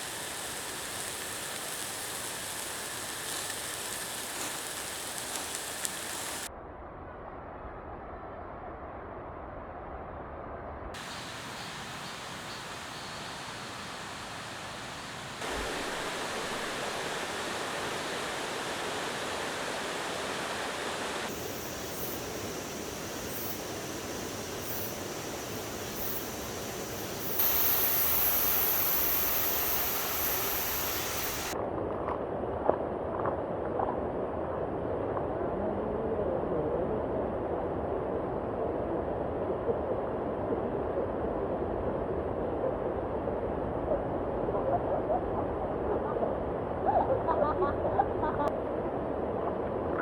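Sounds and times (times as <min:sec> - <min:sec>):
stream rushing over rocks: 0:00.0 - 0:06.5, 0:11.0 - 0:31.6.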